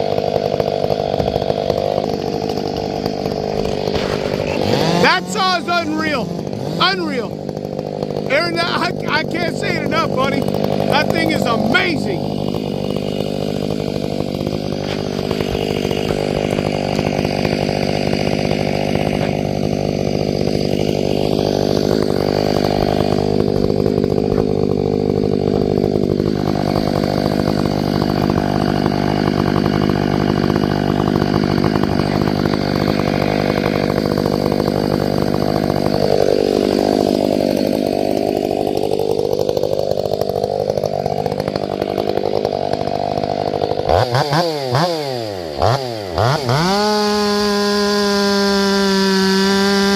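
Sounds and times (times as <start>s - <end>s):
chainsaw cutting log: 0.0s - 49.9s.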